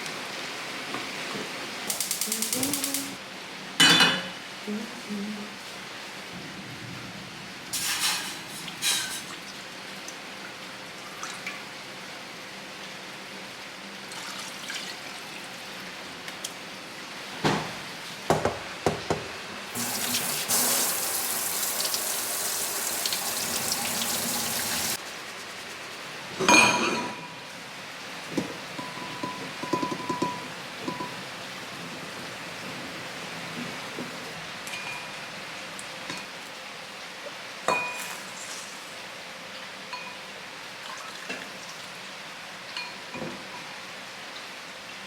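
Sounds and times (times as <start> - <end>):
water running in a stream: 19.8 - 25.9.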